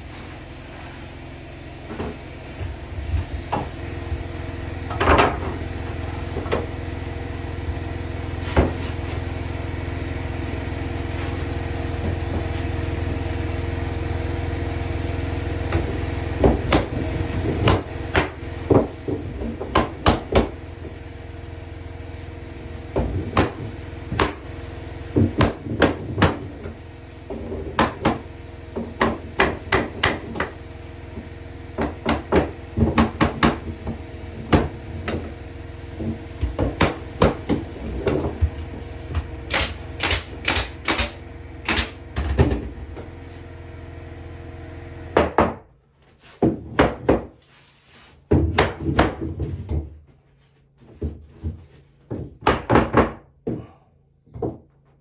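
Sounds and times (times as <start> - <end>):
steady low hum: 0.0 - 45.2.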